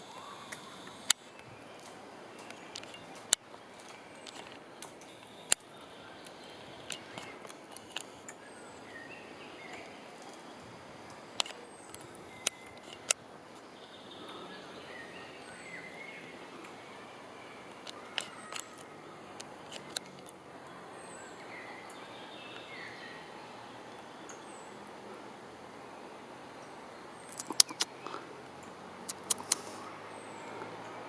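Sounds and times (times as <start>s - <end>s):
small birds chirping: 0.0s - 31.0s
sharp clicks: 27.3s - 27.9s, 29.1s - 29.8s.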